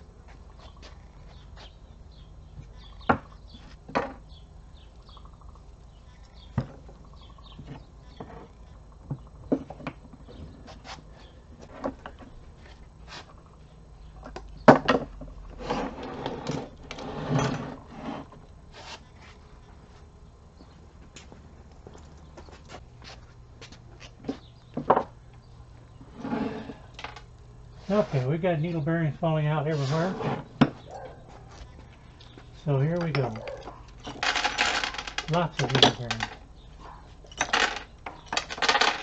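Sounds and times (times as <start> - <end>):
rattling and scraping: 14.1 - 19.4, 26.0 - 28.4, 29.6 - 31.8, 32.5 - 39.0
metal parts clinking and knocking: 32.9 - 36.4, 37.2 - 39.0.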